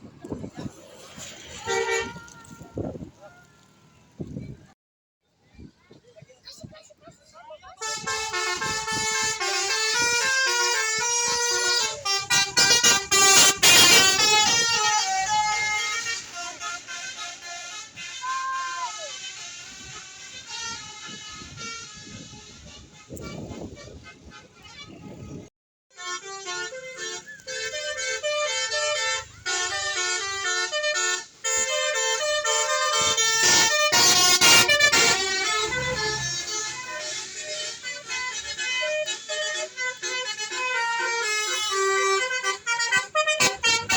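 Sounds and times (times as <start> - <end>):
multi-tone air horn melody: 0.6 - 3.1, 7.8 - 43.9
loud rushing noise: 34.1 - 37.3.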